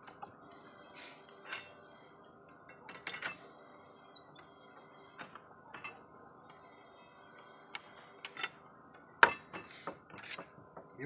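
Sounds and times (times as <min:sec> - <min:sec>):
metallic clinks and taps: 0:01.4 - 0:01.8, 0:02.5 - 0:03.4.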